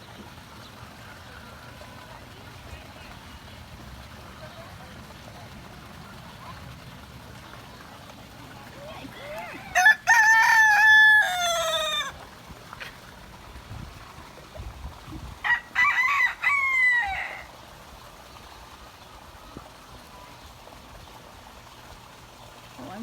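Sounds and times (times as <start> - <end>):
rooster crowing: 9.2 - 12.2, 15.4 - 17.5.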